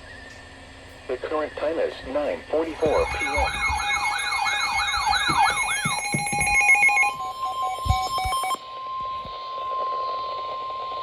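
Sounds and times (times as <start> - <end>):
steady alert tone: 2.7 - 8.6
warbling siren-like alert tone: 2.7 - 8.6.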